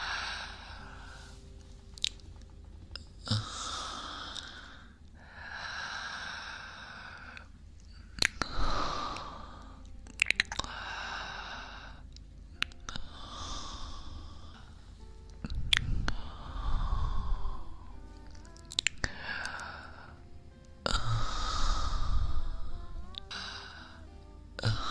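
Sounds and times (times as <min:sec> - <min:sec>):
man breathing softly: 0:03.4 - 0:09.9, 0:16.1 - 0:18.0
sharp clicks: 0:08.2 - 0:08.6, 0:10.1 - 0:10.7, 0:18.3 - 0:19.6.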